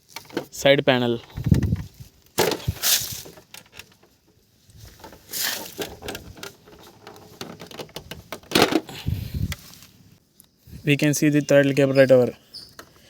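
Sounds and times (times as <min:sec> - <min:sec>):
brief rustle: 0:01.3 - 0:04.0.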